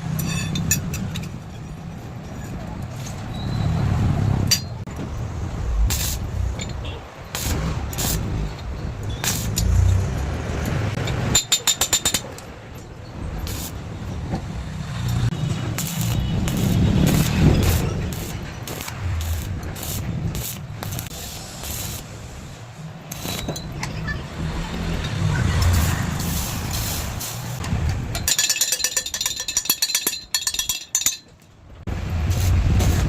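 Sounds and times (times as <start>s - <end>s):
steady low rumble: 4.8s - 10.4s, 15.5s - 23.3s
welding arc crackling and popping: 5.8s - 6.4s, 7.3s - 8.3s, 9.2s - 10.2s, 13.4s - 13.8s, 15.1s - 22.4s, 23.0s - 23.5s, 31.9s - 33.0s
metal-working knocks: 10.6s - 21.1s
ringing metallic taps: 28.1s - 31.5s.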